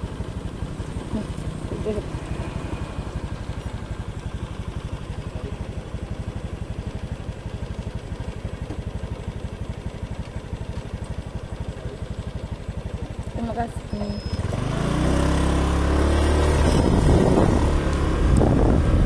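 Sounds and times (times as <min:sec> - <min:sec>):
small motorcycle engine running: 0:00.0 - 0:19.0.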